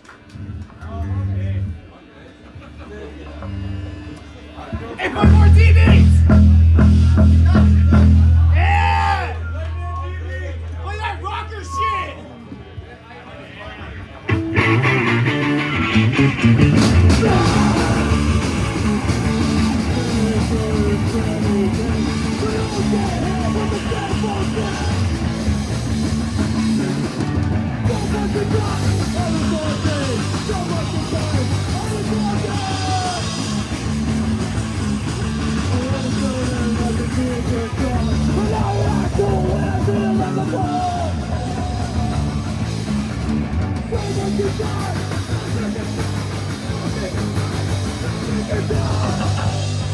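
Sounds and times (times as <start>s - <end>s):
drums: 0.0s - 49.9s
punk rock band playing: 2.6s - 11.9s, 13.8s - 49.9s
person singing: 14.3s - 25.4s, 27.8s - 33.6s, 35.6s - 42.4s, 46.9s - 49.9s.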